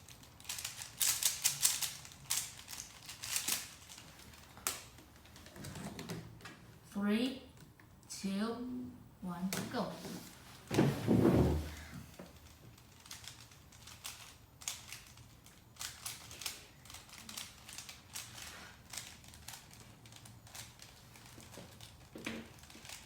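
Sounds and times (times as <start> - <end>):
muffled rustle: 9.6 - 12.2.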